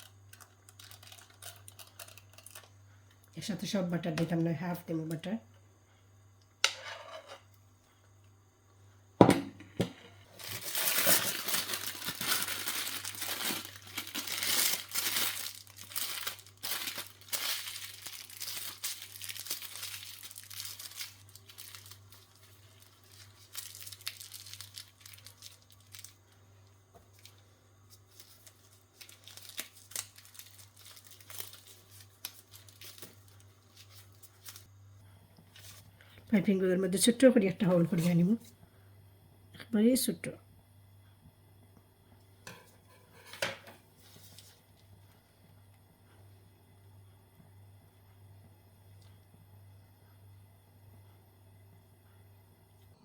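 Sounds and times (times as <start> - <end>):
plastic piping bag crinkling: 0.0 - 2.8, 10.3 - 34.7, 35.5 - 35.9.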